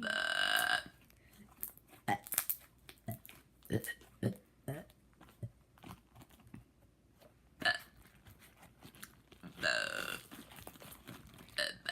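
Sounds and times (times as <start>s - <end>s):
person burping: 0.0s - 1.0s, 2.1s - 2.4s, 3.1s - 5.0s, 7.6s - 7.9s, 9.6s - 10.3s, 11.6s - 11.9s.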